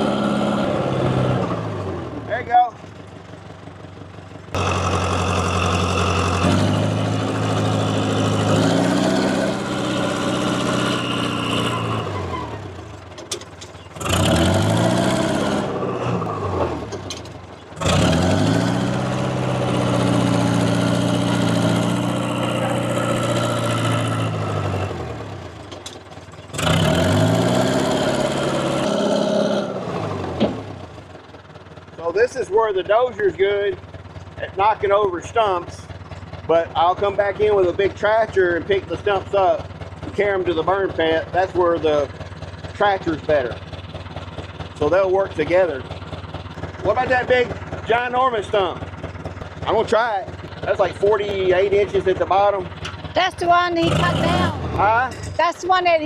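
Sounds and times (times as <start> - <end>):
diesel bulldozer engine revving: 0.0 - 56.0.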